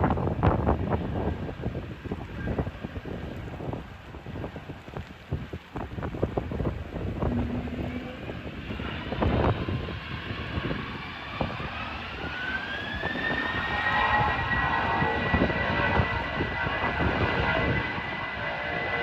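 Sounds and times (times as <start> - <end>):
wind buffeting microphone: 0.0 - 19.0
jet engines whining: 6.0 - 19.0.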